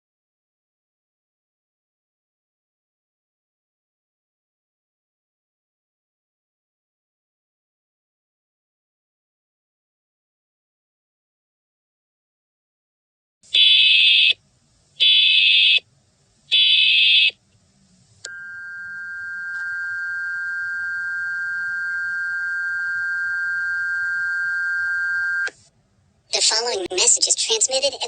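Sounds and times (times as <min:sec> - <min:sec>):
two-tone attention signal: 0:18.3 - 0:25.5.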